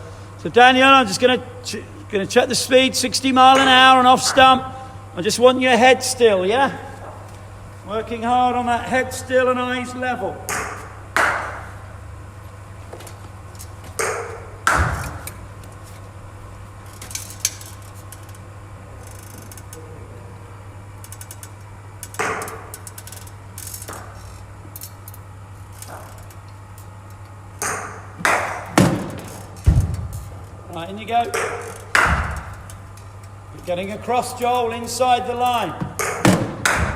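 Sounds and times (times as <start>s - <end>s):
steady low hum: 0.0s - 36.9s
bat striking cricket ball: 10.5s - 11.8s, 14.0s - 15.2s.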